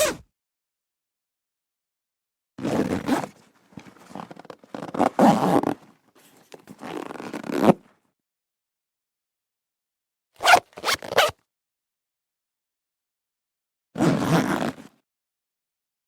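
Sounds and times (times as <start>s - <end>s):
zipper being pulled: 0.0s - 0.2s, 2.6s - 7.9s, 10.4s - 11.4s, 14.0s - 15.0s.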